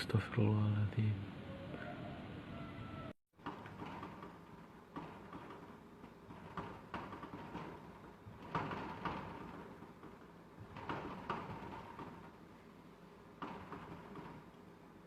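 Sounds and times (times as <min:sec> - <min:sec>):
rattling knocks: 0:03.4 - 0:15.0.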